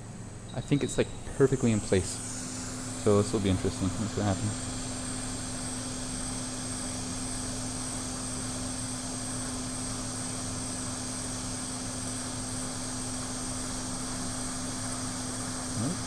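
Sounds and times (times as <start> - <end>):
faint high whine: 0.5 - 7.1, 15.7 - 16.0
hot air station blowing: 0.9 - 16.0.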